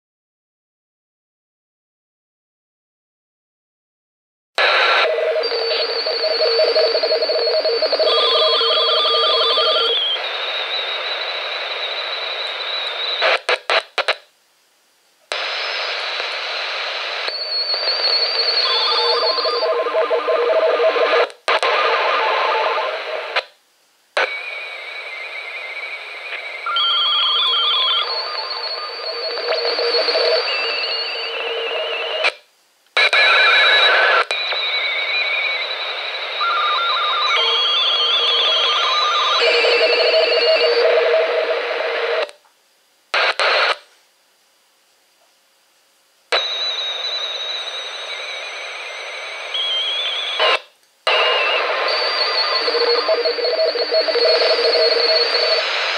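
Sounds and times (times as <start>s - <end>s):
radio static hiss: 4.6s - 14.5s, 15.2s - 44.1s, 46.1s - 55.9s.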